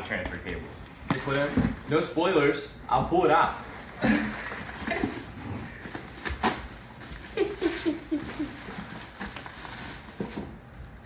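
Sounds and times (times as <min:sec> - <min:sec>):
cardboard packaging rustling: 0:00.5 - 0:02.4, 0:03.1 - 0:11.0.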